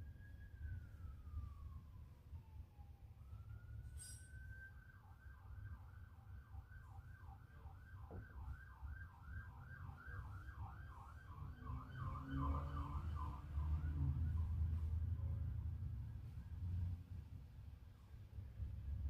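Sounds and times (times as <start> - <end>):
emergency vehicle siren yelping: 0.0 - 15.2.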